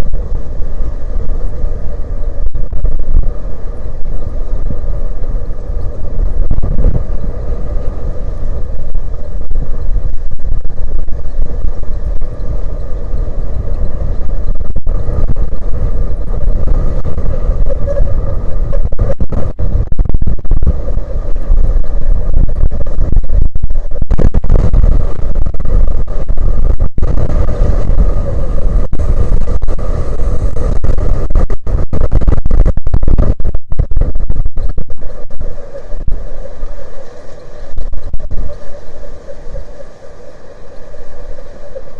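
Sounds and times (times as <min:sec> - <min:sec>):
wind buffeting microphone: 0:00.0 - 0:40.0
faint steady hum: 0:00.0 - 0:41.9.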